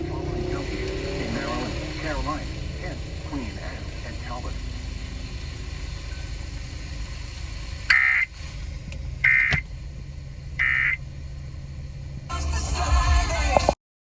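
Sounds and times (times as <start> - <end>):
steady low rumble: 0.0 - 13.8
digital data tone bursts: 7.9 - 8.3, 9.2 - 9.6, 10.6 - 11.0.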